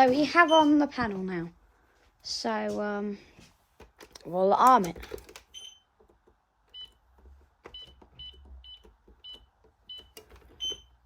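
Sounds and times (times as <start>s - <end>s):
alarm keypad beeping: 7.7s - 11.0s.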